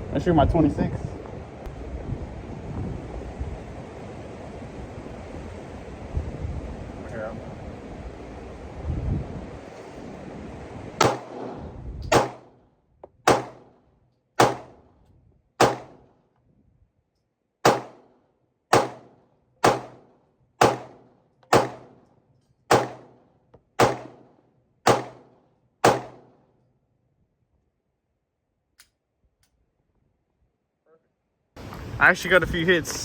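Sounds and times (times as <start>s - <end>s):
pistol shots with echo: 11.0s - 12.5s, 13.3s - 13.7s, 14.4s - 14.8s, 15.6s - 16.0s, 17.6s - 18.1s, 18.7s - 22.0s, 22.7s - 23.2s, 23.8s - 26.4s.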